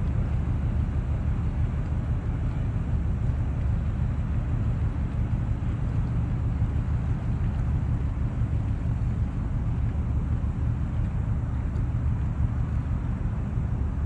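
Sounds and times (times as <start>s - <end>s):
ship engine low rumble: 0.0s - 14.0s.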